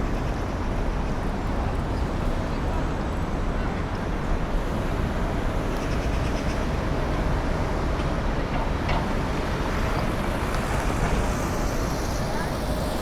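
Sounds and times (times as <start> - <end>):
traffic rumble: 0.0 - 13.0.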